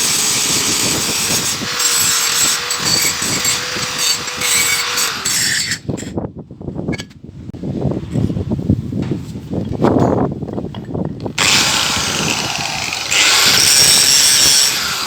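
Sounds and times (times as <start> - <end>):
power tool whining on metal: 0.0 - 5.9, 11.4 - 15.0.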